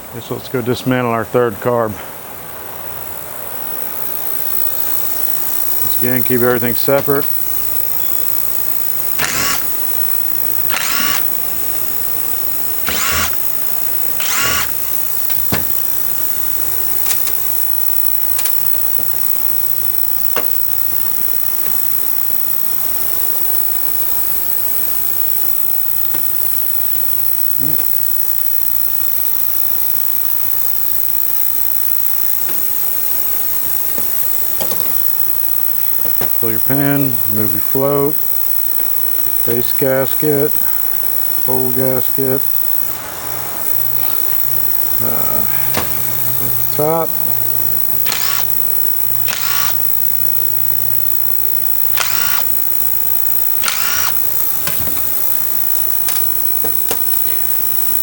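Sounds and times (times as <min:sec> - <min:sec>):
power screwdriver whirring: 0:09.2 - 0:09.9, 0:10.6 - 0:11.4, 0:12.8 - 0:15.8, 0:48.0 - 0:48.6, 0:49.2 - 0:49.9, 0:51.9 - 0:52.6, 0:53.6 - 0:55.2
faint low hum: 0:26.7 - 0:58.0.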